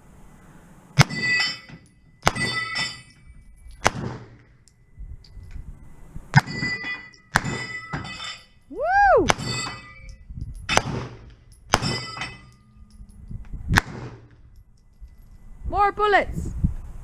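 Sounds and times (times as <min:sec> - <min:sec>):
gunshots: 0:01.0 - 0:01.5, 0:03.8 - 0:04.4, 0:07.3 - 0:07.8, 0:09.3 - 0:09.8, 0:10.7 - 0:12.3, 0:13.7 - 0:14.3
steel plates clanging: 0:01.0 - 0:05.5, 0:06.3 - 0:08.7, 0:09.3 - 0:13.4.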